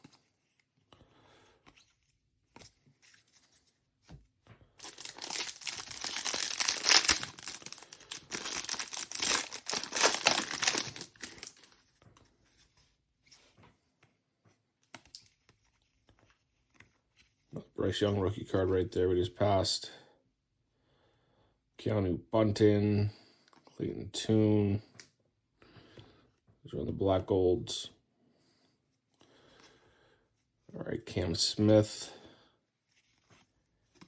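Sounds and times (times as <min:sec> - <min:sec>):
plastic wrapper crinkling and tearing: 0:04.8 - 0:11.8.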